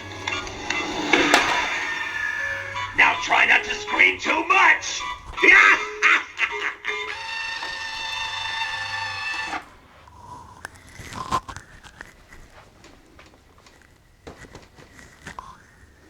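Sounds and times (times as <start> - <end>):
held chord through a speaker: 0.0 - 7.1.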